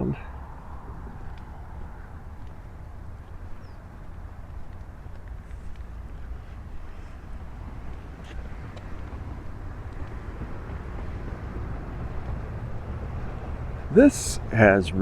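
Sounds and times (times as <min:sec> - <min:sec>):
faint clicks: 0:01.3 - 0:01.5
low rumble and hiss: 0:12.1 - 0:15.0.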